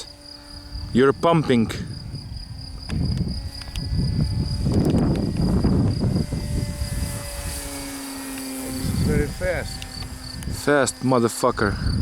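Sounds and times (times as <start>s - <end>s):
crickets chirring: 0.0s - 12.0s
wind buffeting microphone: 0.1s - 12.0s.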